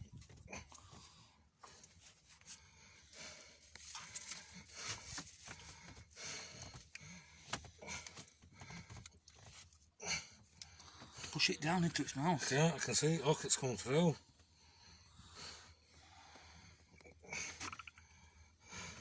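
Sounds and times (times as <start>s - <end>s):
rustling with light clicks: 3.6s - 11.4s.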